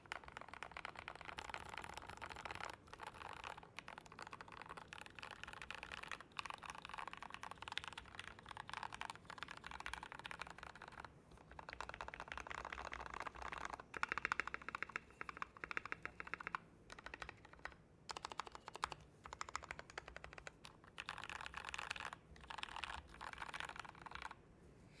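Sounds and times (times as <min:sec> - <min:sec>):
mechanical keyboard typing: 0:00.0 - 0:24.4.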